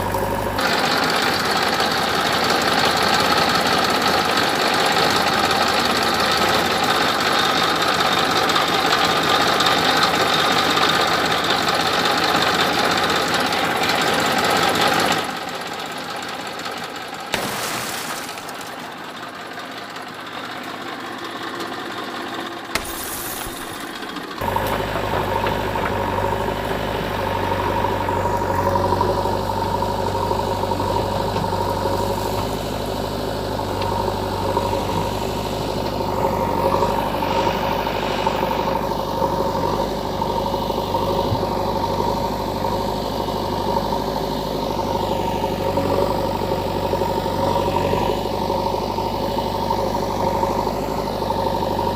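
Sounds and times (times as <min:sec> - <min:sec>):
motor humming: 0:22.7 - 0:51.9.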